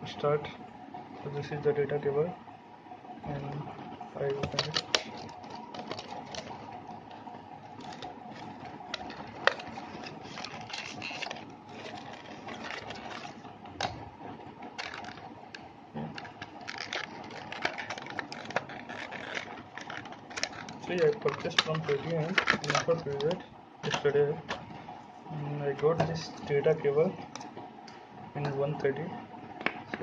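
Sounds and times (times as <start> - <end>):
packaging crinkling and scraping: 4.4 - 6.8, 7.7 - 13.5, 14.7 - 15.3, 16.0 - 24.6.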